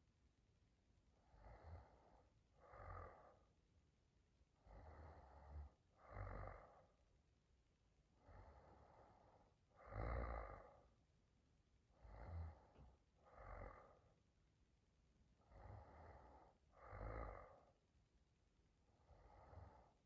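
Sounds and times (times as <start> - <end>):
woman snoring faintly: 1.2 - 3.5, 4.6 - 6.9, 12.0 - 14.1, 15.4 - 17.8.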